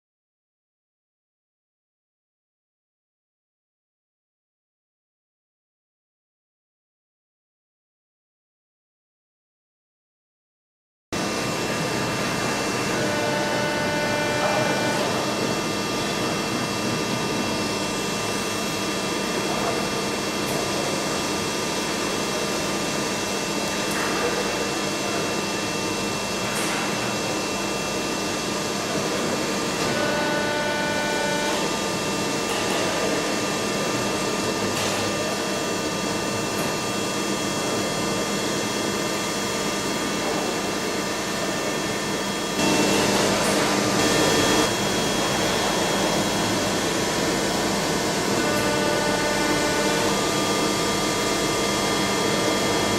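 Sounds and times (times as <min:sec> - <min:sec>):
milling machine hum and whine: 0:11.2 - 0:52.9.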